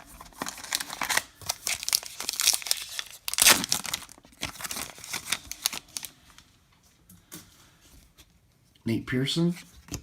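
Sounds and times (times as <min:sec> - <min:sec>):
card pack wrapper tearing and crinkling: 0:00.2 - 0:06.1.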